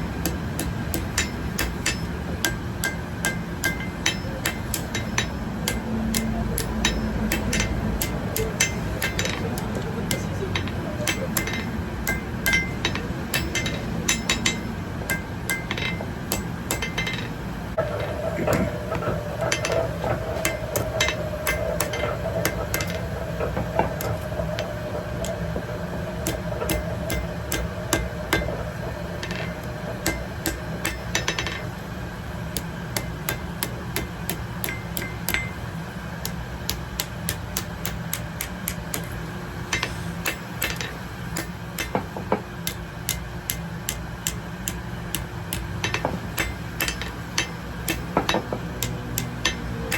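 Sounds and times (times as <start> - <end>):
hammer striking metal on anvil: 0.0 - 31.8, 32.5 - 49.9
low hum: 0.0 - 49.9.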